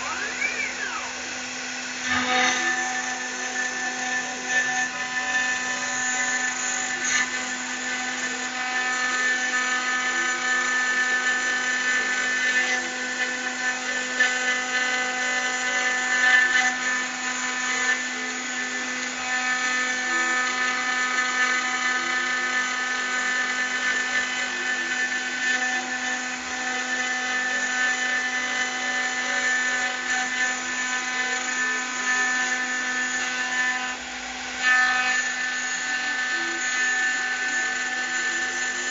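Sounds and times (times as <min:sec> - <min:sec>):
spindle whining: 0:00.0 - 0:19.2
engraving bit cutting metal: 0:00.0 - 0:38.9.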